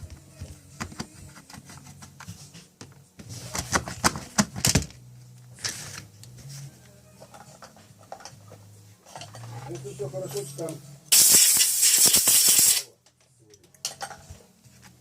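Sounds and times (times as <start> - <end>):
short hiss: 11.1 - 12.9.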